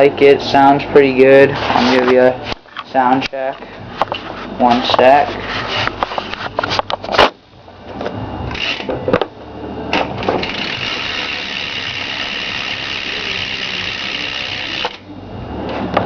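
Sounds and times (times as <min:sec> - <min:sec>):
bicycle hub freewheel clicking: 0:08.5 - 0:08.9, 0:10.2 - 0:15.1.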